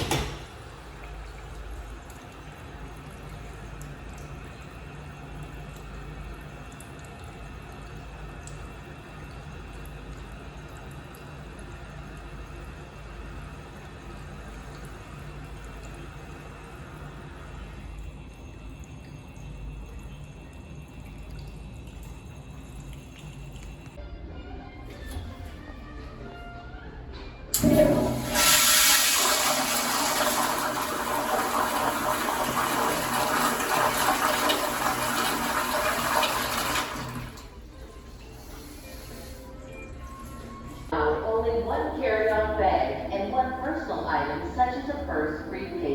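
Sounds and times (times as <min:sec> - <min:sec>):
toilet water running: 0:00.0 - 0:24.0, 0:27.5 - 0:39.4.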